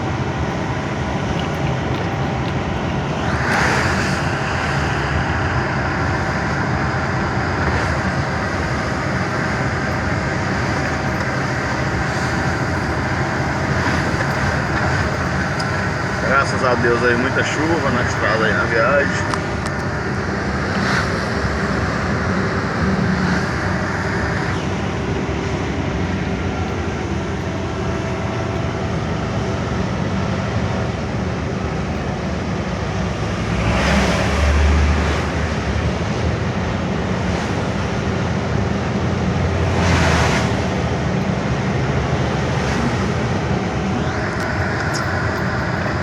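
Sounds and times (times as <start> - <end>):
loud rushing swells: 0.0 - 46.0
truck engine drone: 0.0 - 46.0
tyre and wet road noise: 0.0 - 46.0.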